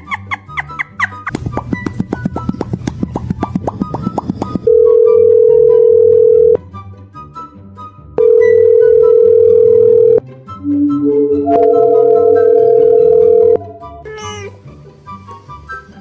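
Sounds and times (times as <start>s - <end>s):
electronic tones: 4.7s - 6.6s, 8.2s - 14.3s.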